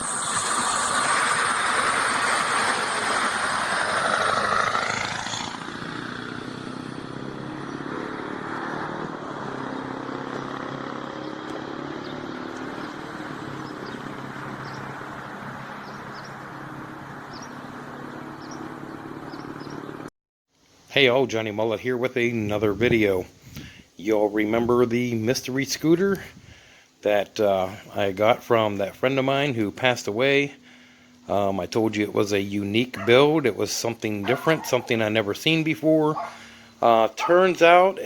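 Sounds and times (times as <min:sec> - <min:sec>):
small gasoline engine running: 0:00.0 - 0:20.1.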